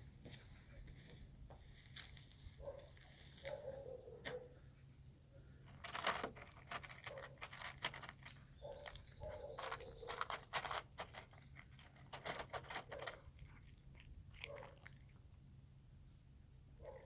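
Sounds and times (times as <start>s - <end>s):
cat chewing and crunching food: 5.6s - 15.6s.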